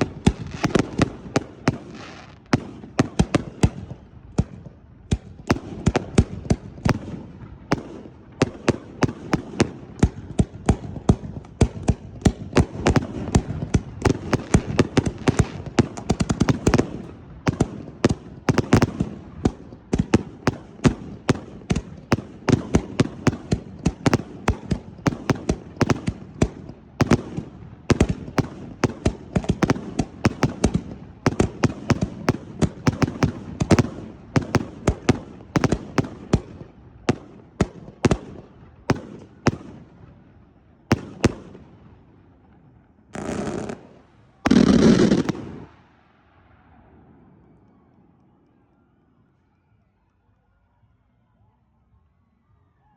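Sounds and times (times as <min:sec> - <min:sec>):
fireworks bangs: 0:00.0 - 0:40.2, 0:40.8 - 0:48.0.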